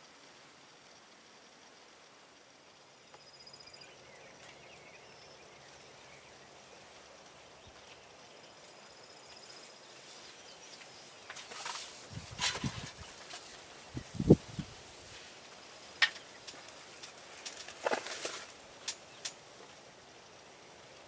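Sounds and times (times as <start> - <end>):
rustling: 11.3 - 15.4, 16.4 - 18.6.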